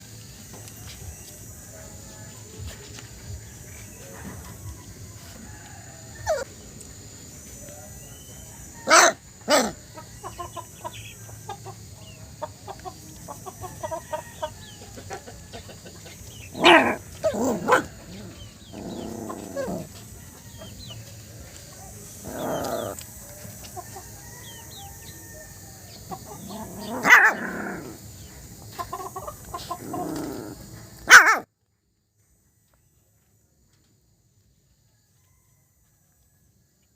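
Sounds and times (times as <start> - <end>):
small puppy barking and yapping: 8.8 - 9.8, 16.5 - 17.9, 26.5 - 27.8, 31.0 - 31.5
faint squeaky calls: 21.8 - 23.0.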